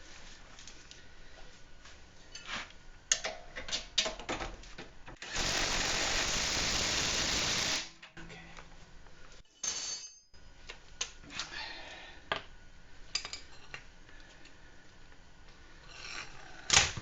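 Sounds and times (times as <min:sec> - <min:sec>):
power tool running: 0:05.2 - 0:07.9.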